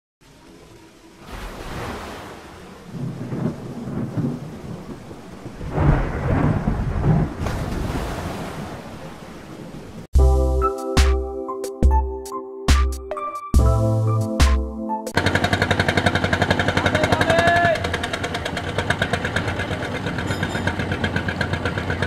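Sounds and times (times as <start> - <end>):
wind buffeting microphone: 2.7 - 10.1
music: 10.2 - 15.2.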